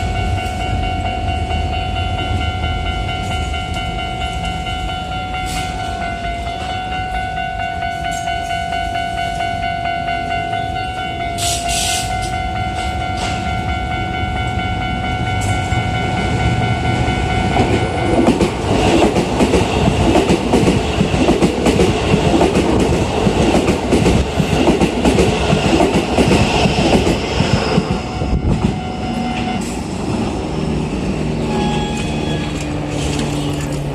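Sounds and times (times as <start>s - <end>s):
level crossing alarm ringing: 0.0s - 21.1s, 21.7s - 30.0s
train wheels clattering: 11.3s - 13.6s, 17.4s - 28.8s.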